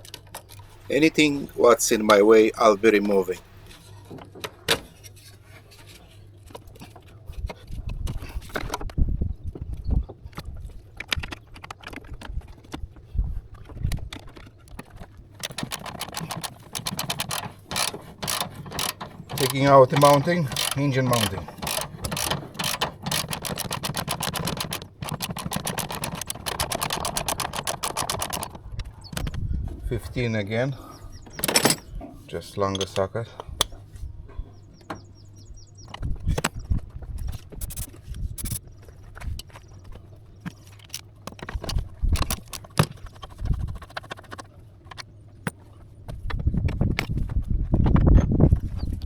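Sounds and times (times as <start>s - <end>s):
metal tools clinking and knocking: 15.4s - 28.6s, 31.3s - 32.0s
ratchet wrench clicking rapidly: 15.6s - 28.5s, 37.6s - 38.6s.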